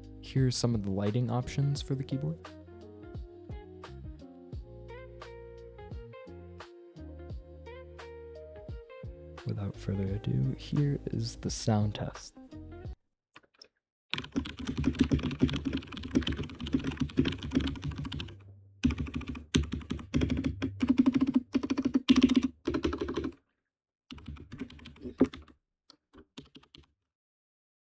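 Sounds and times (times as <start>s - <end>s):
typing on mechanical keyboard: 14.2s - 23.4s, 24.1s - 25.5s, 26.3s - 26.9s.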